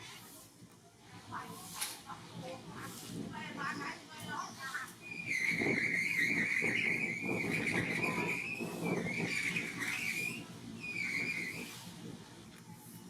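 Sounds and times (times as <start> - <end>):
high-pitched wavering squeal: 5.0 - 12.0.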